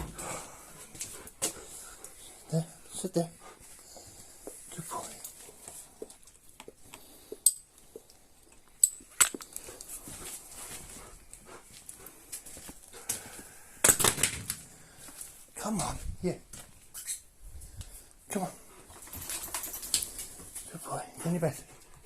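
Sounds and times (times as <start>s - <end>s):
rustling: 9.2s - 13.5s
dog moving about: 18.9s - 20.6s.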